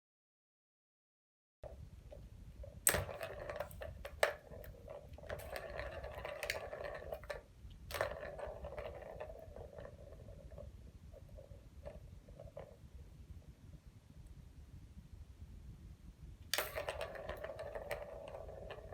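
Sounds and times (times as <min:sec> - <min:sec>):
ball rattling in plastic toy: 0:01.7 - 0:12.9, 0:16.5 - 0:18.9.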